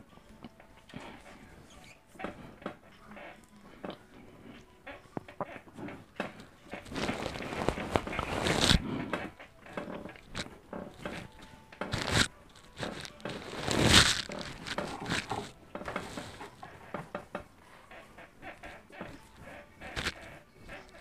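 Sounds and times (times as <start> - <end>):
rustling on clip microphone: 5.5 - 21.0.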